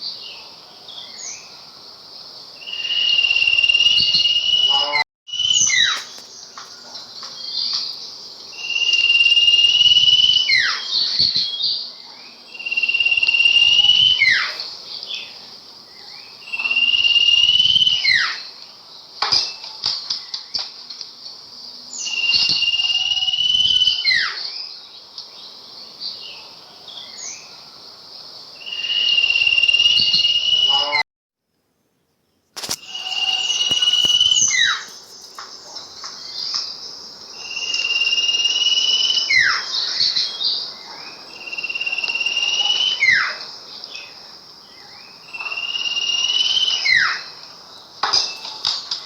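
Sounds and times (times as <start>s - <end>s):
songbird buzzy trill and whistle: 2.6s - 15.4s, 16.0s - 18.6s, 21.8s - 24.8s, 28.5s - 31.0s, 32.6s - 44.2s, 44.8s - 48.9s
quiet bird chirps: 31.9s - 48.6s.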